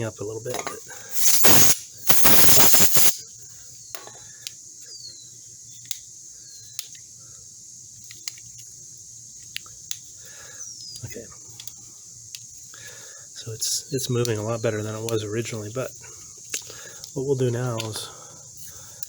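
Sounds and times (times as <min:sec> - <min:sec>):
compressed air blasts: 0:00.6 - 0:03.2.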